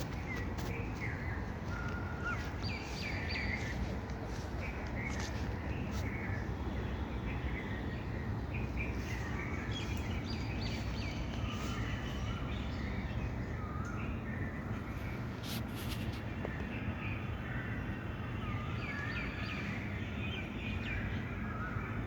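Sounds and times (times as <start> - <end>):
small birds chirping: 0.0 - 17.3.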